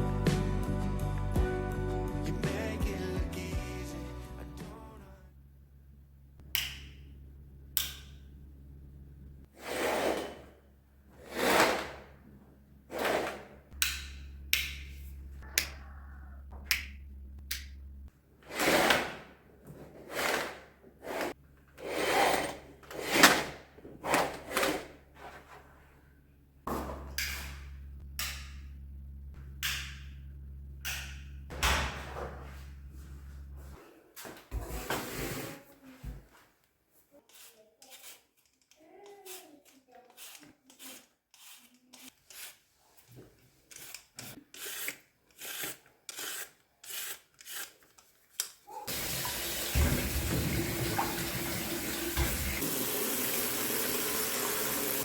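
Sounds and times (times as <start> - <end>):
rustling and scraping: 18.4 - 26.1
steady low hum: 26.0 - 33.8.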